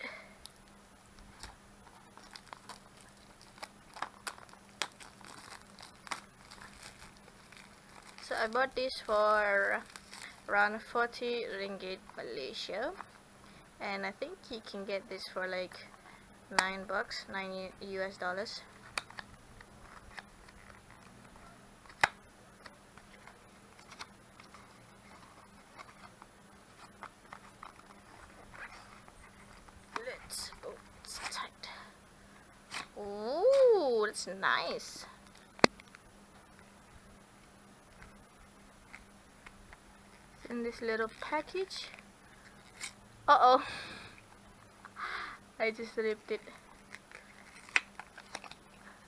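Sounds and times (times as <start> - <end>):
plastic packaging crinkling: 0.4 - 11.0, 18.6 - 31.8, 38.8 - 43.0, 46.6 - 49.0.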